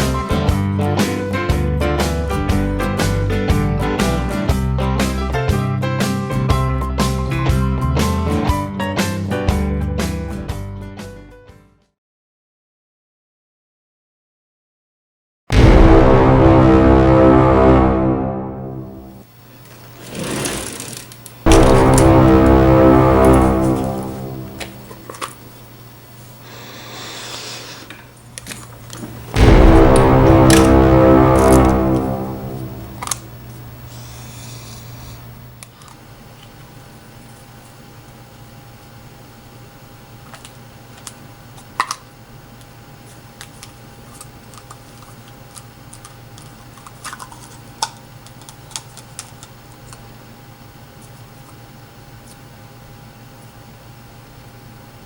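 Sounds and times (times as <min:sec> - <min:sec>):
background music sustained chords: 0:15.6 - 0:19.3, 0:21.5 - 0:25.3, 0:29.3 - 0:33.8
steady low hum: 0:21.0 - 0:55.0.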